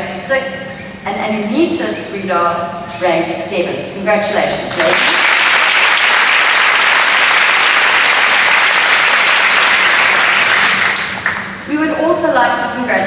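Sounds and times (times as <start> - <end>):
audience applauding: 4.7 - 11.6.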